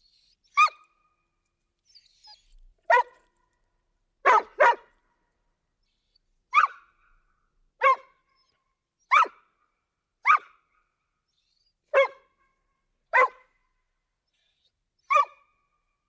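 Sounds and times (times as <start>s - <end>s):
dog barking: 2.9s - 3.2s, 4.2s - 4.9s, 6.5s - 6.8s, 7.8s - 8.1s, 9.1s - 9.4s, 10.2s - 10.5s, 11.9s - 12.3s, 13.1s - 13.5s, 15.1s - 15.4s.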